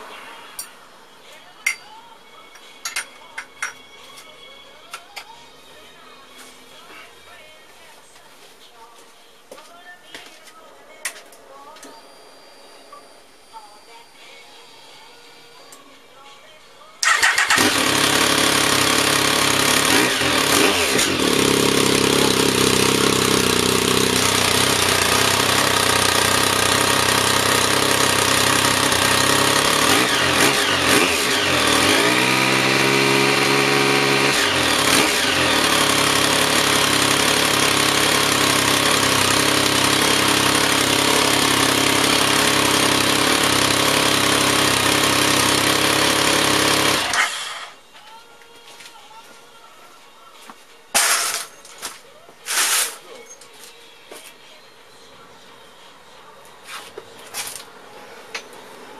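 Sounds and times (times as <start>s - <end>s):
vehicle engine idling and revving: 17.0s - 47.5s.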